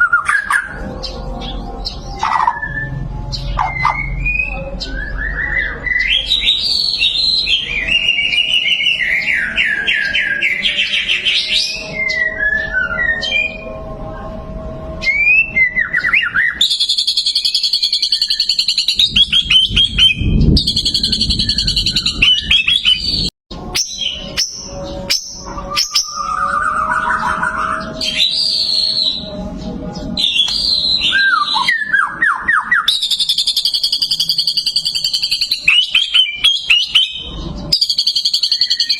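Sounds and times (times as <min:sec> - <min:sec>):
bird whistling song: 0:00.0 - 0:13.8, 0:15.0 - 0:38.9
fast rattling bird trill: 0:16.3 - 0:29.2, 0:30.2 - 0:38.9.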